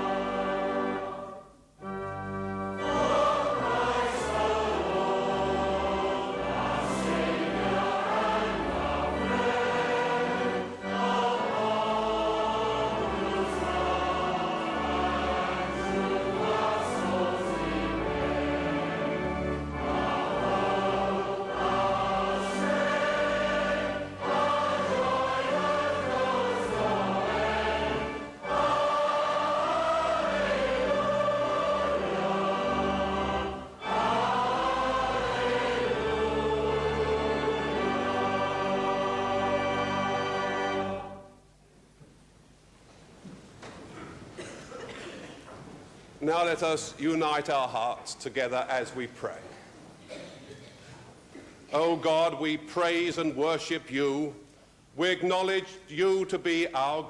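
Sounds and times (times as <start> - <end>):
choir singing a hymn: 0.0 - 41.4.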